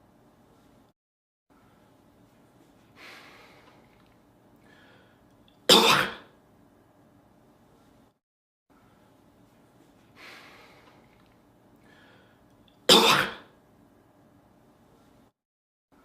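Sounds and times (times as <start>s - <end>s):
faint breathy sound: 4.6s - 5.3s, 11.8s - 12.5s
man coughing: 5.7s - 6.3s, 12.9s - 13.5s.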